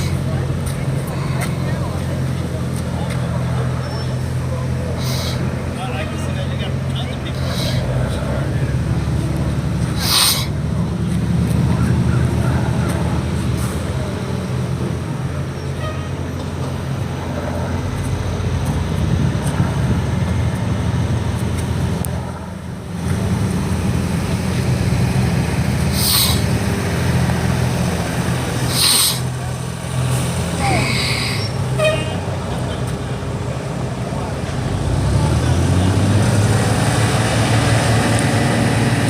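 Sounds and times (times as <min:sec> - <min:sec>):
vehicle engine idling: 0:00.0 - 0:39.0
short hisses: 0:05.0 - 0:05.5, 0:10.0 - 0:10.6, 0:25.9 - 0:26.5, 0:28.7 - 0:29.3.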